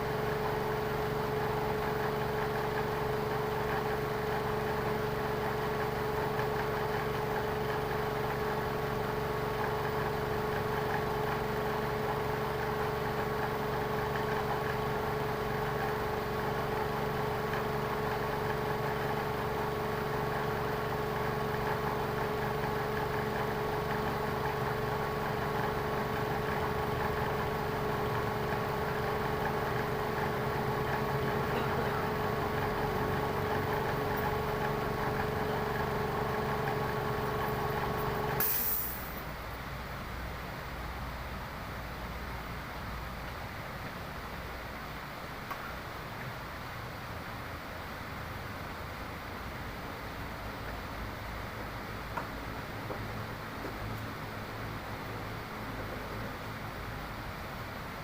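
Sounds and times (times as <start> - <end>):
car engine idling: 0.0 - 39.2.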